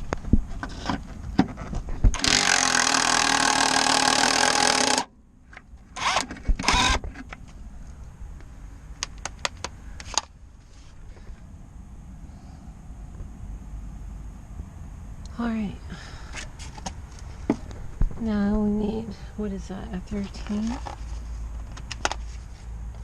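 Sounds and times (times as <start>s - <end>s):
impact wrench running: 2.2s - 5.1s, 6.0s - 7.0s.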